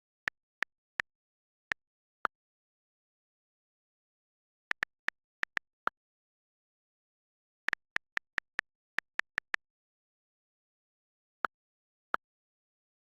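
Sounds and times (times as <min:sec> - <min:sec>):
phone keyboard clicks: 0:00.0 - 0:01.0, 0:04.7 - 0:05.7, 0:07.7 - 0:09.6.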